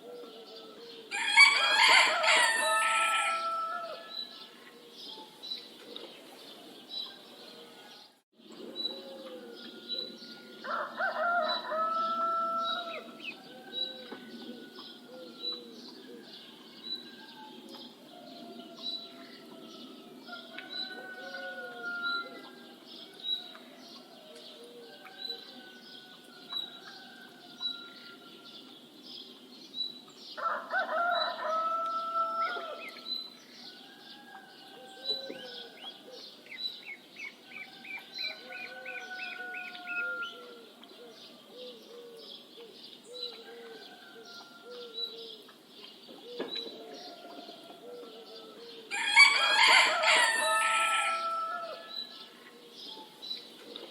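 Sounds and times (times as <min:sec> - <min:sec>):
rooster crowing: 0:00.5 - 0:04.5, 0:09.6 - 0:15.6, 0:18.2 - 0:22.5, 0:30.4 - 0:32.8, 0:37.6 - 0:40.6, 0:47.0 - 0:52.2
small birds chirping: 0:22.4 - 0:53.9.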